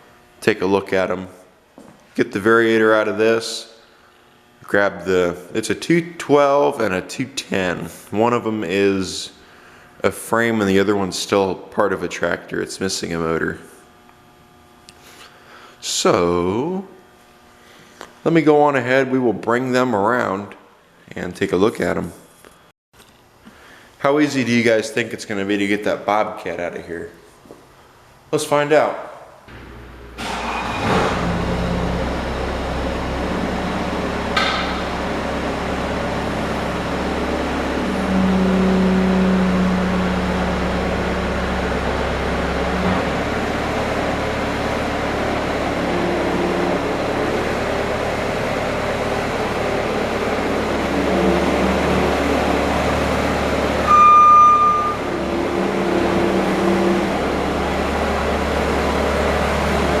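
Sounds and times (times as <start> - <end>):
skid-steer loader engine running: 29.5 - 60.0
short high beep: 53.9 - 55.1.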